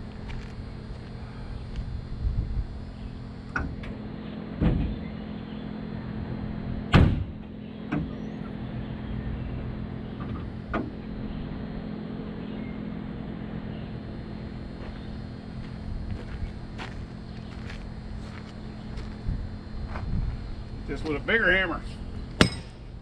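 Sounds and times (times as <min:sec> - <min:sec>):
steady low hum: 0:00.0 - 0:23.0
hammer blows on metal: 0:22.4 - 0:22.8.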